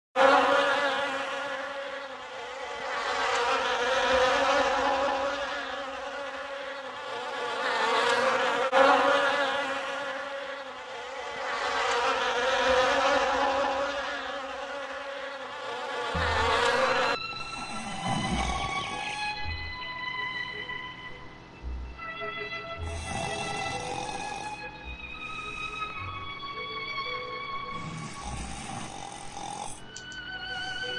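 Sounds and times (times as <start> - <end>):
bowed strings music: 11.0 - 28.7, 29.8 - 30.9
person snoring: 16.1 - 19.6, 22.8 - 25.9, 27.7 - 29.9.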